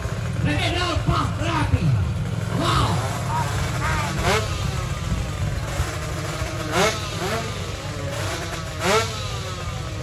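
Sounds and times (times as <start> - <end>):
motorcycle engine revving: 0.0 - 10.0.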